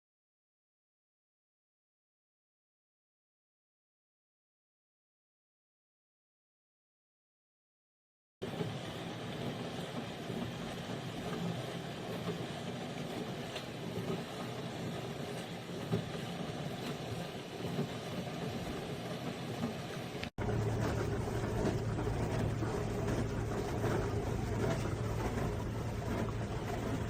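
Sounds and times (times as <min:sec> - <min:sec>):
dishwasher humming and rushing: 0:08.4 - 0:27.0.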